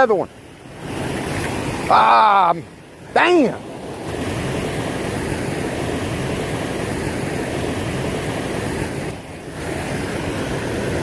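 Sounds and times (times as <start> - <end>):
creek water over rocks: 0.0 - 11.0.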